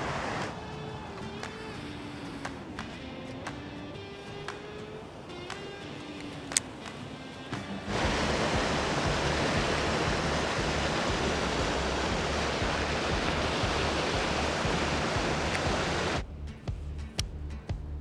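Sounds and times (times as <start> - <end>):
background music: 0.2 - 18.0
loud rushing noise: 7.9 - 16.2.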